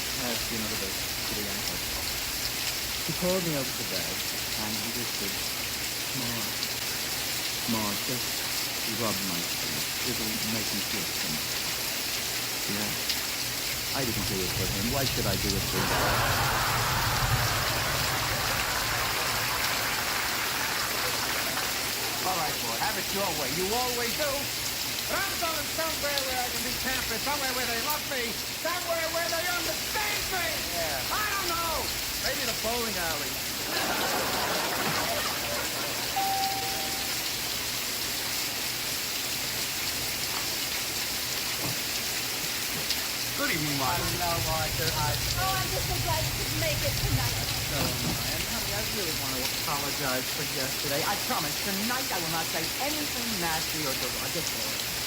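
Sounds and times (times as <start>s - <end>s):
steady rain: 0.0s - 55.0s
short steady tone: 36.2s - 37.2s.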